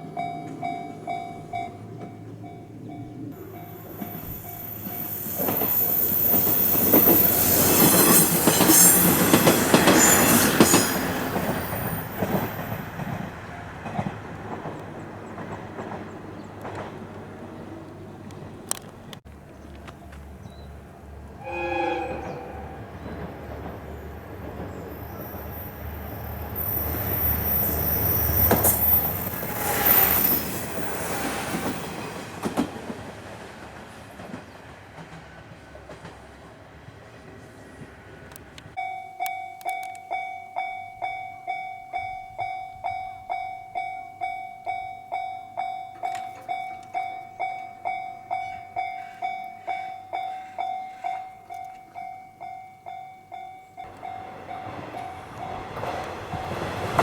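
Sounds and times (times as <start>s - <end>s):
level-crossing alarm ringing: 0.0s - 12.3s, 21.4s - 31.3s, 38.8s - 57.0s
train passing: 0.0s - 38.9s, 40.6s - 57.0s
high wheel squeal: 3.7s - 12.4s, 21.3s - 24.2s, 24.8s - 31.8s.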